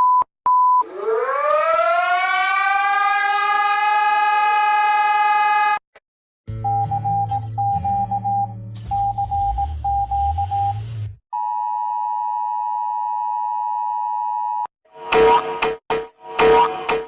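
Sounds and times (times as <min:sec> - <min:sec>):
electronic alarm tone beeping: 0:06.6 - 0:10.8.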